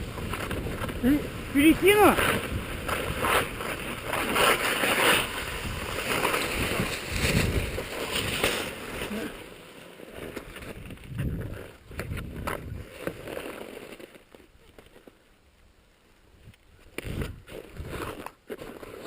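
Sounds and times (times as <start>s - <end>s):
wind buffeting microphone: 0.0s - 4.2s, 5.2s - 8.4s, 10.7s - 12.9s.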